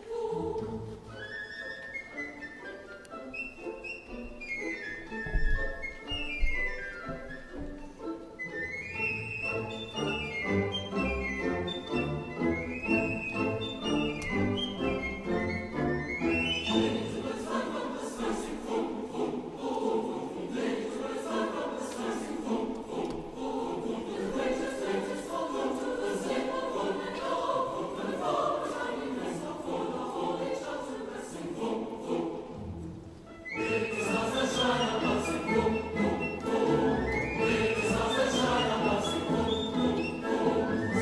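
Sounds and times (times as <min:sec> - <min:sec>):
choir singing: 0:00.0 - 0:41.0.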